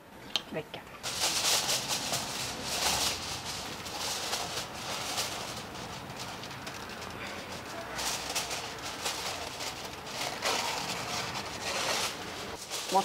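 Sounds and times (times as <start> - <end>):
aluminium foil crinkling: 1.0 - 13.0.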